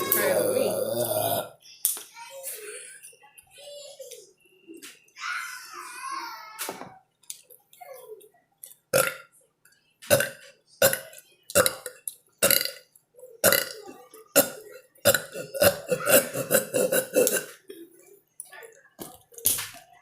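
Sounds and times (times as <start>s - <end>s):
child burping: 0.0s - 1.6s, 9.0s - 9.3s, 10.1s - 12.8s, 13.4s - 17.9s.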